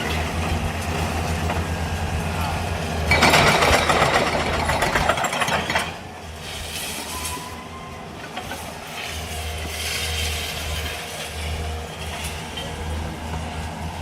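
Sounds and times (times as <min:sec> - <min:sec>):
diesel engine running: 0:00.0 - 0:14.0
crashing and rattling debris: 0:03.1 - 0:07.2.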